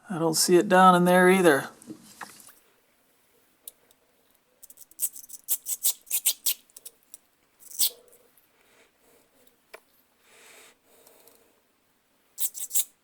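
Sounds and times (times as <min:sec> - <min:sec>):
small metal parts clicking: 0:04.6 - 0:07.9.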